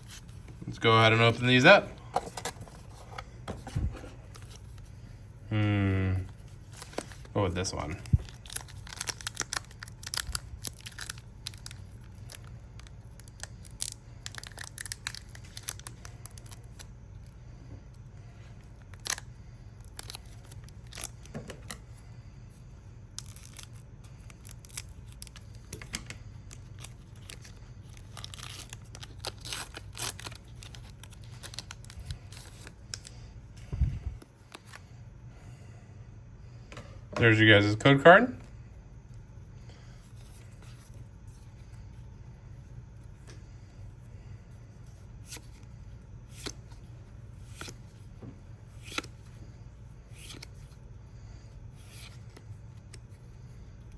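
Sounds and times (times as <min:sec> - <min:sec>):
steady low hum: 0:00.0 - 0:53.9
foil wrapper tearing and crinkling: 0:06.8 - 0:16.9, 0:26.7 - 0:33.0.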